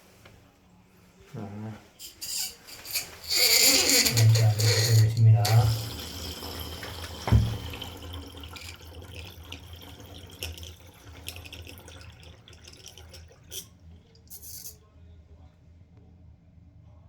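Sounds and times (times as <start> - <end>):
water running in a bathtub: 2.0 - 14.6
water drips: 4.2 - 13.7.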